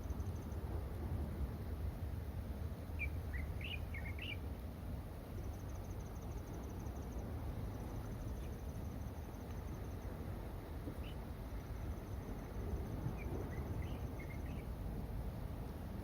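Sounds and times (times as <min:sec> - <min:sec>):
rapid insect trill: 0:00.0 - 0:00.9, 0:05.2 - 0:14.8
steady low rumble: 0:00.0 - 0:16.0
small bird chirping: 0:03.0 - 0:04.4, 0:13.1 - 0:14.7.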